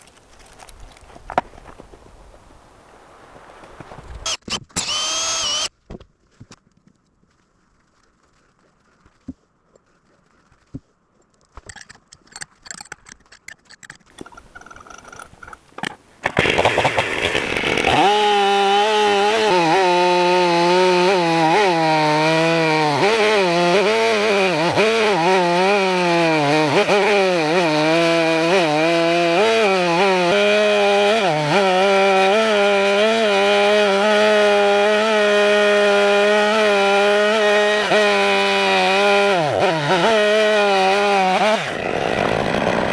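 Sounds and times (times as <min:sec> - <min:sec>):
light clicks and rustles: 0:00.0 - 0:02.4
chainsaw cutting through log: 0:04.2 - 0:05.7, 0:14.1 - 0:42.9.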